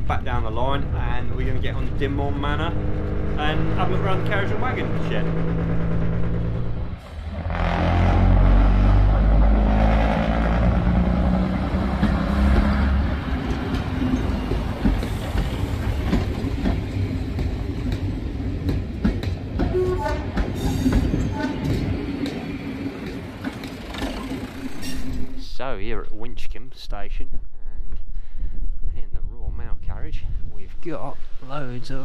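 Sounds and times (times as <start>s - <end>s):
train wheels on rails: 0.0s - 25.4s
railcar diesel engine running: 0.0s - 25.5s.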